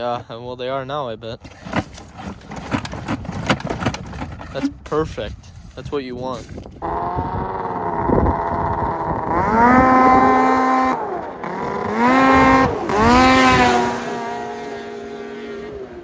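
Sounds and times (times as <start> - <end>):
snowmobile engine revving: 5.8 - 16.0.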